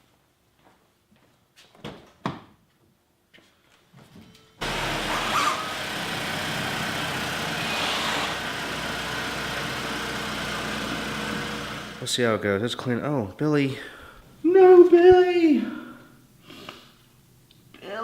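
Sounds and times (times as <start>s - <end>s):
motor running: 4.6s - 12.0s.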